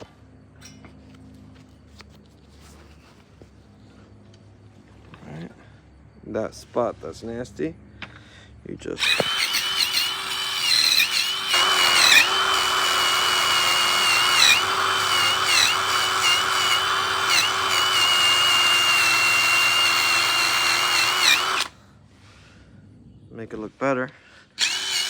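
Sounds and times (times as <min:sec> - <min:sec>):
drill motor whine: 0:09.0 - 0:21.7, 0:24.6 - 0:25.0.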